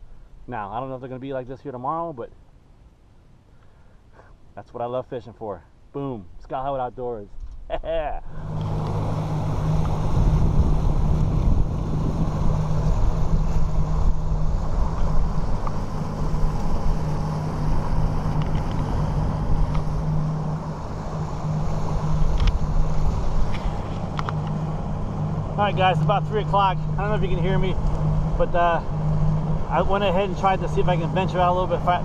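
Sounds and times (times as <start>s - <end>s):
outboard motor humming: 8.2s - 32.0s
wind buffeting microphone: 8.3s - 32.0s.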